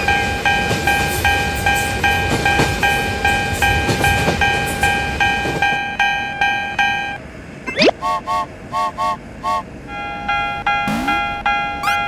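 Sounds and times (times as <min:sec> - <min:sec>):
railroad crossing alarm clanging: 0:00.0 - 0:07.2, 0:08.0 - 0:12.0
passing train rumble: 0:00.0 - 0:07.6.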